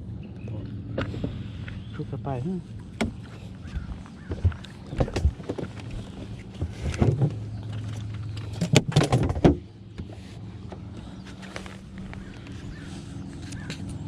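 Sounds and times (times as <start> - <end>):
steady low hum: 0.0 - 14.0
sharp knocks and clatter: 3.0 - 10.1.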